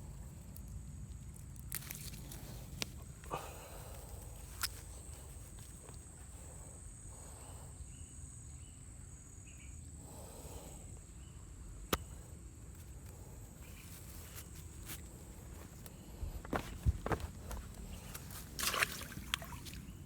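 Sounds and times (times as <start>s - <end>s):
soft rustles: 13.6s - 18.9s.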